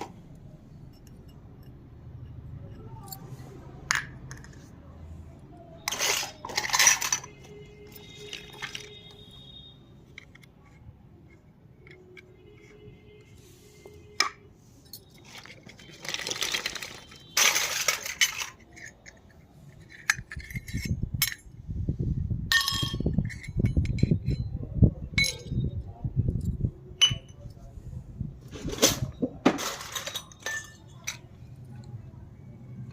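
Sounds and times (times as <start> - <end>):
plastic toys clicking: 5.8 - 9.4, 10.0 - 12.8, 15.0 - 21.6
rustling: 15.1 - 18.6.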